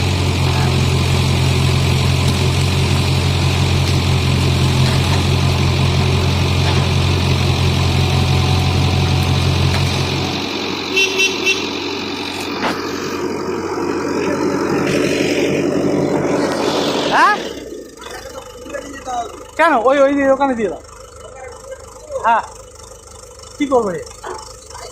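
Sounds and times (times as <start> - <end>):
diesel engine droning: 0.0 - 24.9
horn toots: 10.9 - 11.8.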